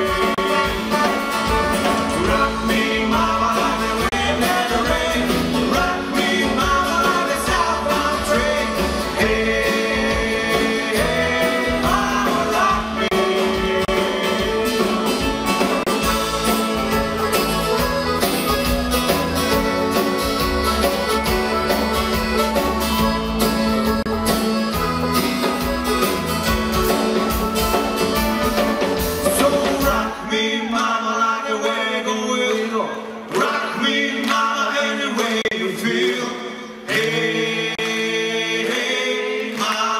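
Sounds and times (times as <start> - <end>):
bluegrass band with guitar: 0.0 - 30.3.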